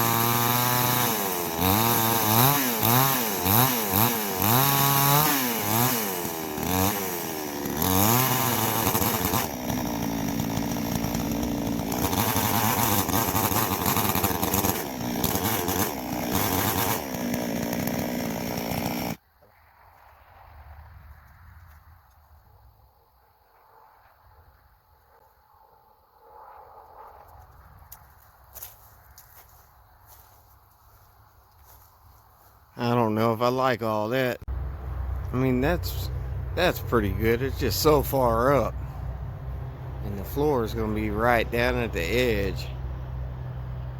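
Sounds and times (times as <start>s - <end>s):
chainsaw revving and cutting: 0.0s - 19.2s, 34.8s - 43.0s.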